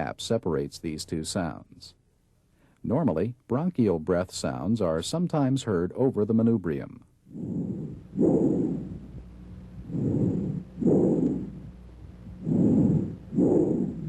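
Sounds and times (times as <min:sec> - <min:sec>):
bronchial breath sounds: 0:07.3 - 0:14.0.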